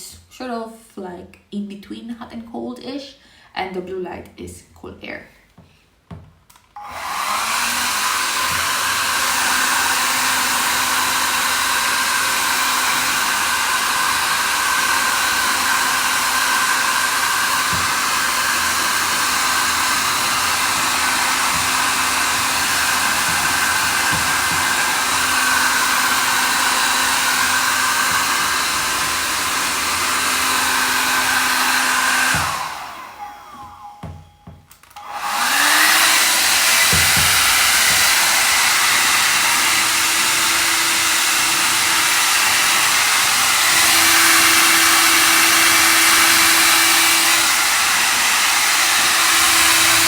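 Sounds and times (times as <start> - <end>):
hair dryer blowing air: 6.7 - 50.0.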